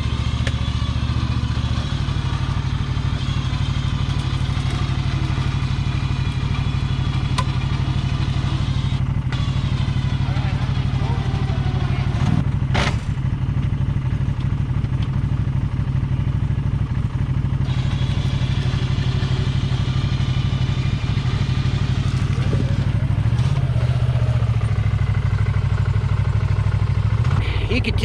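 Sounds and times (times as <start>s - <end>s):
electric winch whine: 0.0s - 12.4s, 17.6s - 26.4s
engine running at low revs: 0.0s - 28.0s.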